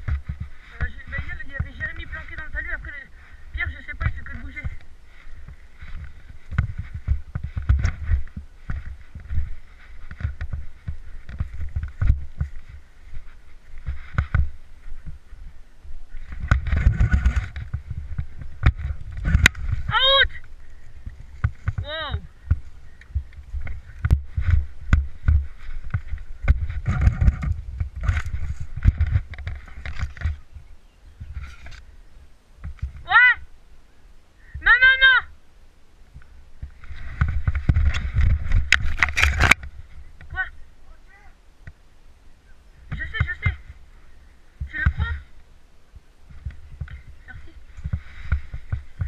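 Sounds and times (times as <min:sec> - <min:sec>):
microphone handling noise: 0:00.0 - 0:33.5, 0:36.0 - 0:41.9, 0:42.7 - 0:49.0
low rumble of wind: 0:00.0 - 0:49.0
rustling: 0:00.0 - 0:49.0
low thumps and knocks: 0:03.9 - 0:15.5, 0:16.2 - 0:30.5, 0:36.1 - 0:40.4.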